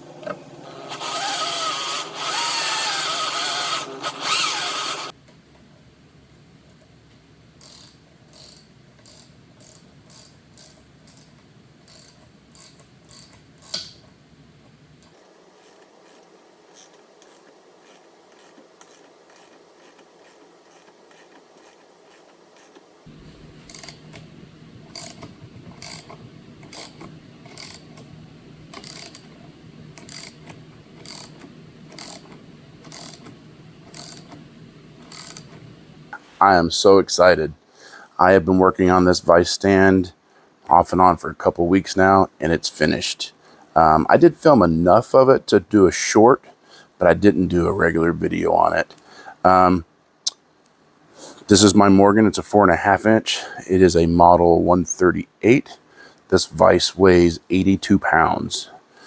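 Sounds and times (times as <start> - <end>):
sharp mechanical clicking: 0.7 - 5.1, 23.7 - 24.2, 24.9 - 28.1, 28.7 - 29.4, 30.0 - 34.4, 35.0 - 35.6
low hum: 23.1 - 36.2.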